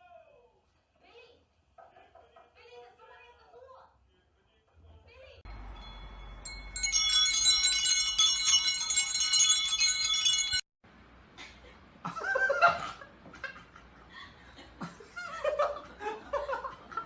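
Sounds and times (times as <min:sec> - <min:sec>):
chimes ringing: 0:05.5 - 0:10.7.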